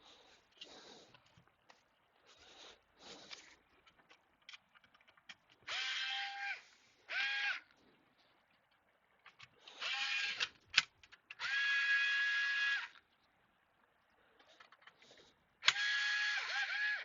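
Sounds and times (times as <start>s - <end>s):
electric screwdriver whine: 5.6s - 7.6s, 9.7s - 10.5s, 11.4s - 13.0s, 15.6s - 17.0s.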